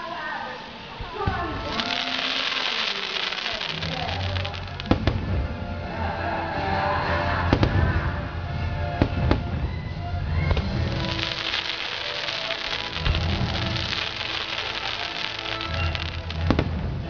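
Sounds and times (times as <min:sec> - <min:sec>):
fireworks crackling and banging: 0:01.0 - 0:05.6, 0:10.3 - 0:17.0
show music: 0:01.6 - 0:05.9, 0:06.6 - 0:16.7.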